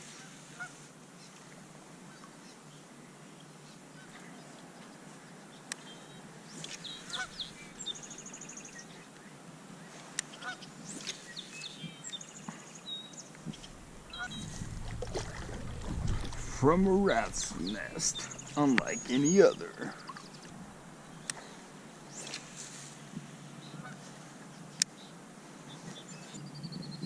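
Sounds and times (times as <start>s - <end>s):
birds chirping and calling: 6.6s - 8.8s, 13.4s - 21.5s
bird trill: 13.5s - 15.7s
low rumble: 13.5s - 19.1s.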